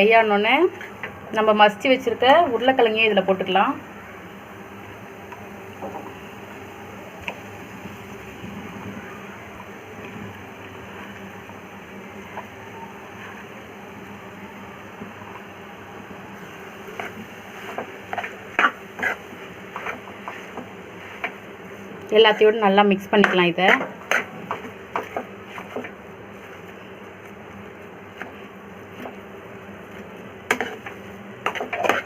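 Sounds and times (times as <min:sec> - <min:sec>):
spoon scraping metal pan: 0:18.1 - 0:20.6, 0:30.5 - 0:32.0.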